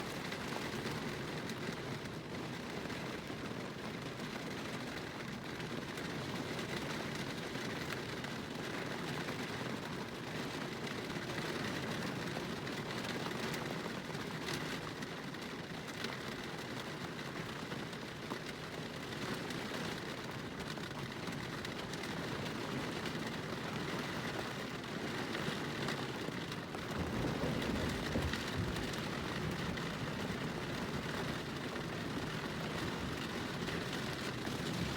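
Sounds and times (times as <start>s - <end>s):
steady rain hissing: 17.2s - 34.9s
low thunder rumble: 26.8s - 34.9s.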